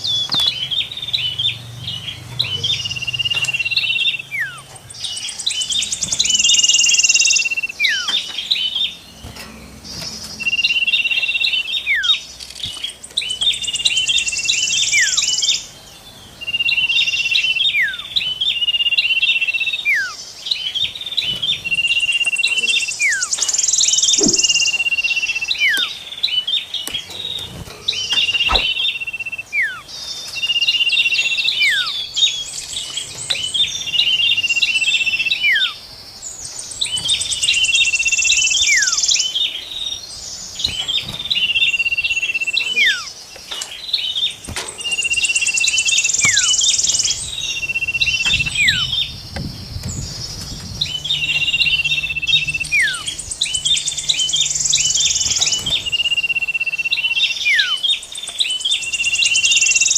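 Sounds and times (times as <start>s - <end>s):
bird trill: 0.0s - 59.9s
high bird chirps: 0.0s - 59.9s
dry buzzing rattle: 43.4s - 56.4s.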